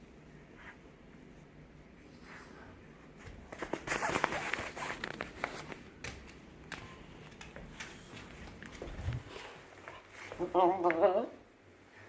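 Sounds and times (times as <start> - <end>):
scratching and rustling: 2.1 - 10.6.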